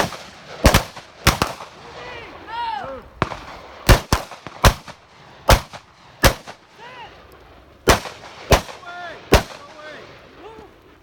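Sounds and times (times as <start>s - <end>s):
rifle shots with echo: 0.0s - 2.5s, 3.1s - 10.6s.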